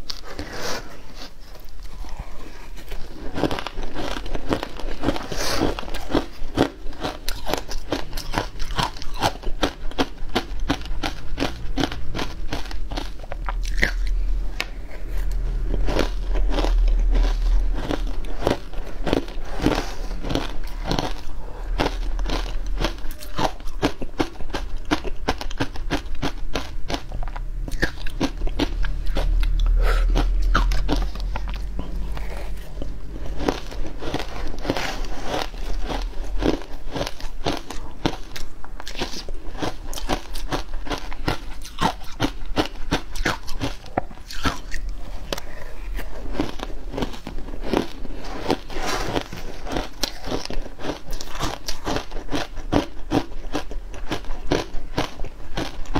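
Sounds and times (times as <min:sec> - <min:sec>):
ice being bitten and chewed: 0:00.0 - 0:55.9
low rumble: 0:07.6 - 0:40.8, 0:41.4 - 0:50.3.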